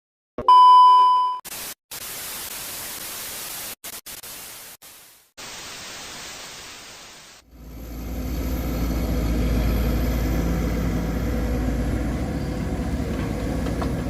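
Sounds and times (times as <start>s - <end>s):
hissing static: 1.5s - 7.4s.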